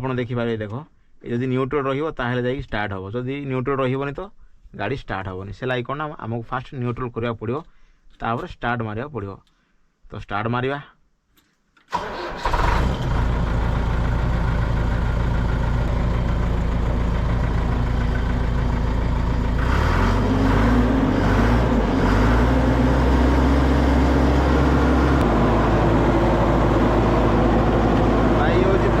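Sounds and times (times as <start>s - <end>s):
diesel engine idling and revving: 12.0s - 29.0s.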